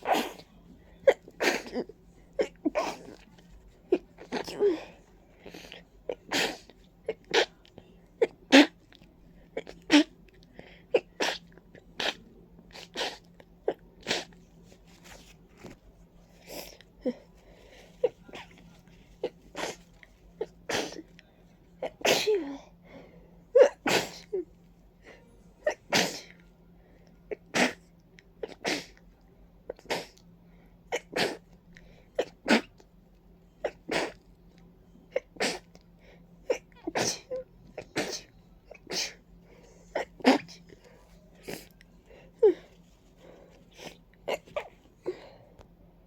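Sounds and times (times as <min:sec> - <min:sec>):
wet congested sneezes: 0:00.0 - 0:09.0, 0:10.9 - 0:14.4, 0:18.0 - 0:21.2, 0:21.8 - 0:22.6, 0:23.6 - 0:24.4, 0:25.6 - 0:26.4, 0:27.4 - 0:29.0, 0:29.7 - 0:30.2, 0:30.9 - 0:31.5, 0:32.2 - 0:32.8, 0:33.6 - 0:34.2, 0:35.1 - 0:35.8, 0:36.4 - 0:43.0.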